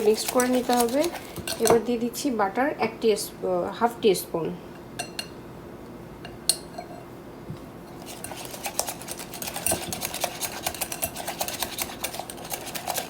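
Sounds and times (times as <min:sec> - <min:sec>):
utensil clinking against bowl: 0:00.0 - 0:01.8, 0:08.0 - 0:13.0
utensil stirring batter in bowl: 0:00.0 - 0:02.0, 0:07.9 - 0:13.0.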